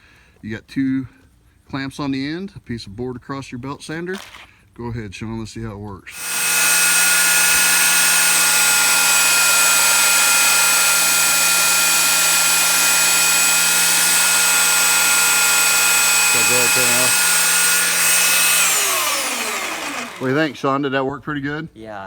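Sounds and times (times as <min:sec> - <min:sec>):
belt sander running: 0:06.1 - 0:20.7.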